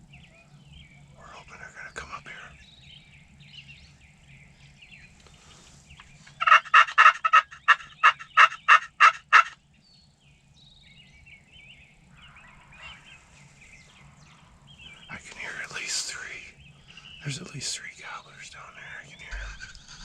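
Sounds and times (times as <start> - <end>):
turkey call yelps: 6.4 - 9.6.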